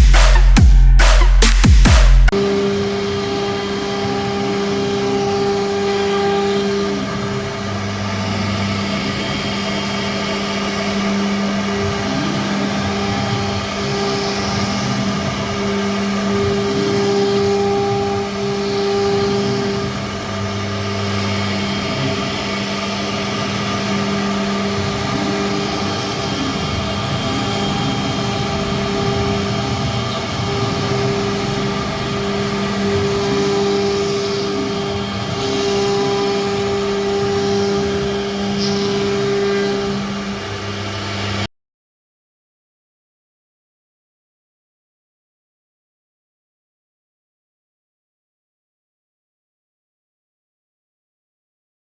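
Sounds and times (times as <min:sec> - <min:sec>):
router machine hum: 0:02.4 - 0:41.5.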